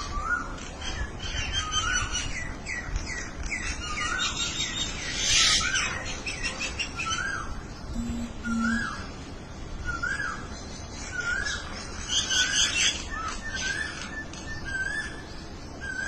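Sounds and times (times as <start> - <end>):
birds chirping: 0.1 - 16.0
bird whistle rising and falling: 8.0 - 9.1
short low tones: 8.0 - 9.2.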